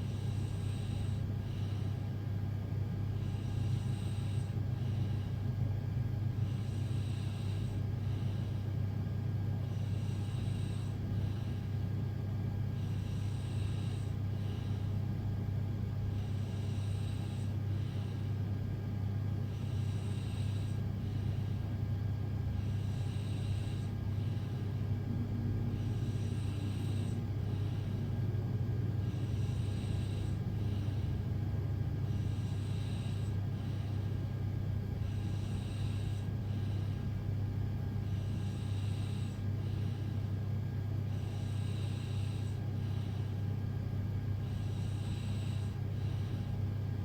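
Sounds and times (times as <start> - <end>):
person breathing while asleep: 0.0 - 2.0, 3.2 - 5.4, 6.4 - 8.8, 9.6 - 11.9, 12.7 - 15.0, 16.1 - 18.6, 19.4 - 21.8, 22.5 - 24.9, 25.8 - 28.2, 29.0 - 34.2, 35.0 - 43.4, 44.4 - 46.5.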